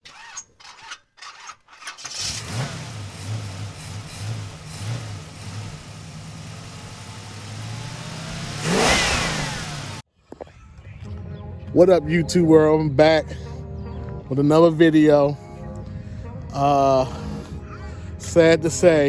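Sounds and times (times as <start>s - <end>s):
car engine starting and idling: 2.0s - 10.0s
engine revving: 2.1s - 10.0s.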